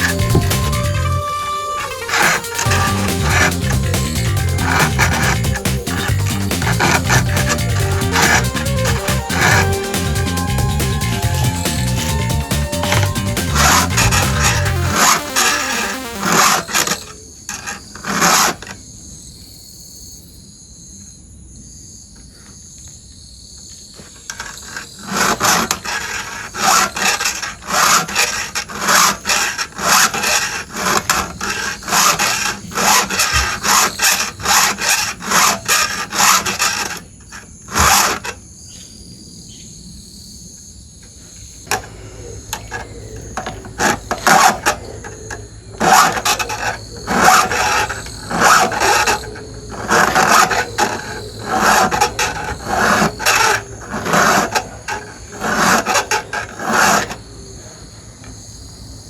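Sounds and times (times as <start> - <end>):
file rasping on chainsaw chain: 0.0 - 1.2, 2.0 - 15.4, 25.0 - 38.3, 43.4 - 57.2.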